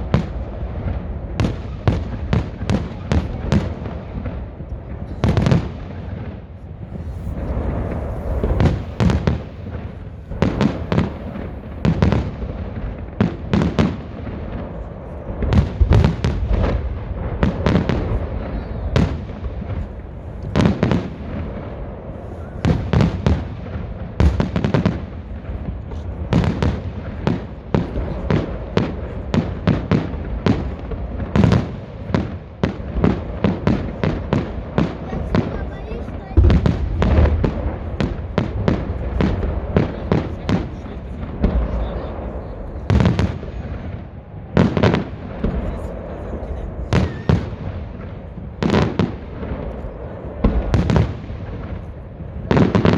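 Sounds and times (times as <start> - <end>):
fireworks bursting: 0.0 - 52.9
low rumble: 4.6 - 12.8.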